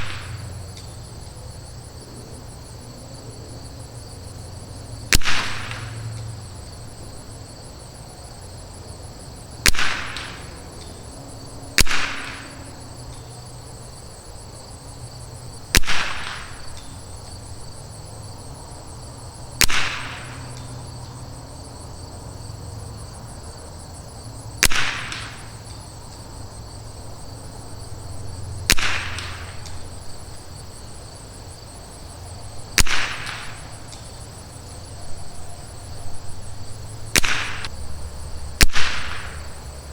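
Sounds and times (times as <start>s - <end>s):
rifle shots: 0.0s - 0.6s, 5.1s - 6.2s, 9.6s - 10.6s, 11.8s - 12.7s, 15.8s - 16.9s, 19.6s - 20.7s, 24.6s - 25.6s, 28.7s - 29.9s, 32.8s - 34.0s, 37.1s - 37.8s, 38.6s - 39.6s
high chirring of insects: 0.0s - 39.9s.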